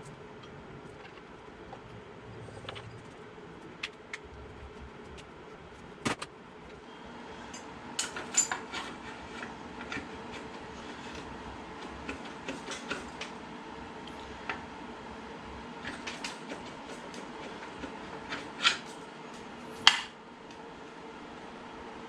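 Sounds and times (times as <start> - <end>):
metal tools and parts clinking: 7.5 - 8.9.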